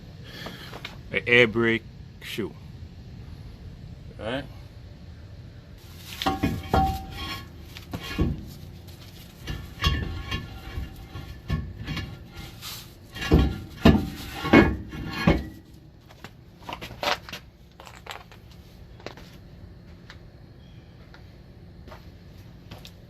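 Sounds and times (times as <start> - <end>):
tools knocking and clanking: 6.2 - 8.6, 9.4 - 12.4, 13.1 - 15.7.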